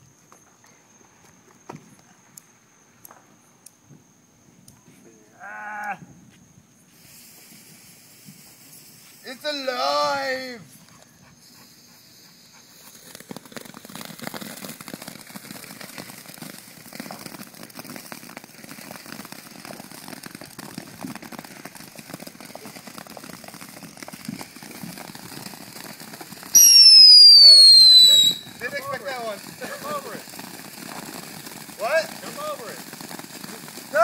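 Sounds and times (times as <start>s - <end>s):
firework crackling and popping: 5.8s - 34.0s
firework whistle falling in pitch: 26.5s - 28.6s.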